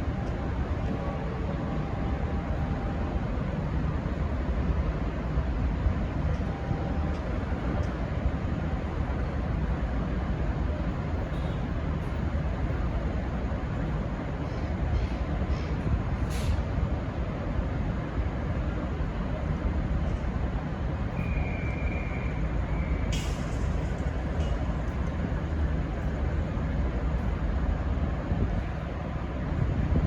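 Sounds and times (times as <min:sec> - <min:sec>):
diesel railcar idling rumble: 0:00.0 - 0:30.0
air brake hiss: 0:15.6 - 0:16.7, 0:23.1 - 0:23.8.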